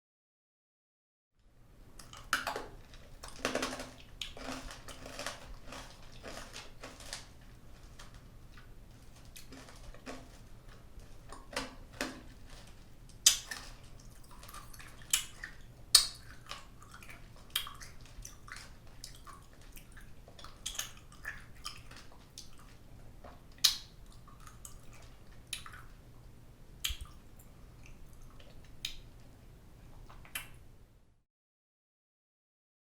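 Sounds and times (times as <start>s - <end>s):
person chewing hard candy: 2.0s - 29.1s
wet mouth clicks: 13.2s - 13.7s, 14.3s - 22.7s, 23.5s - 26.0s, 26.8s - 27.2s, 27.8s - 29.1s, 30.1s - 30.6s.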